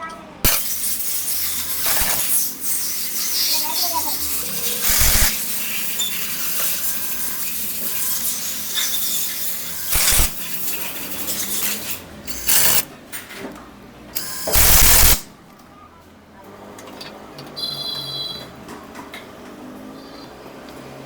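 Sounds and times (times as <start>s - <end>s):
short loud bursts of noise: 0.4s - 3.5s, 4.4s - 6.9s, 9.9s - 10.6s, 14.4s - 15.3s
metal tools and parts clinking: 0.5s - 12.8s.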